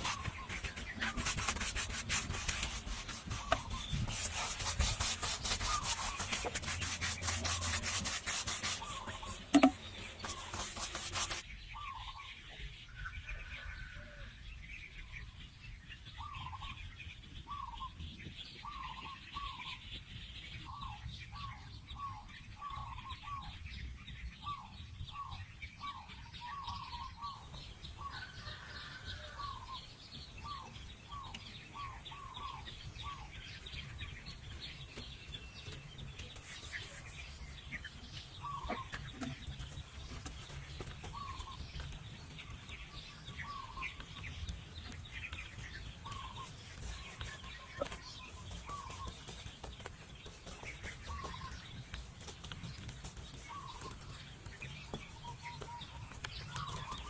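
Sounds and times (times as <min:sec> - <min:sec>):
high-pitched bird chirping: 0:00.0 - 0:12.2.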